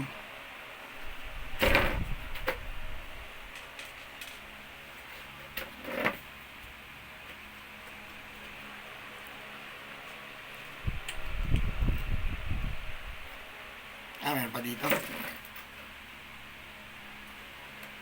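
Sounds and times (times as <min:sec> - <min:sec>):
light clicks of small parts: 0:03.5 - 0:04.5, 0:11.0 - 0:11.7, 0:17.2 - 0:18.0.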